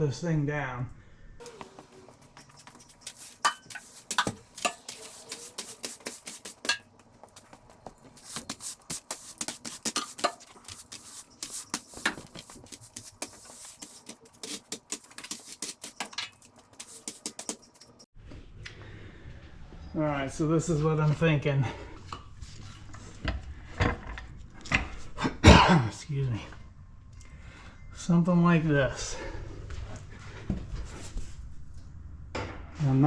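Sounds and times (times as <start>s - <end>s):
hard objects clattering: 1.4s - 18.1s.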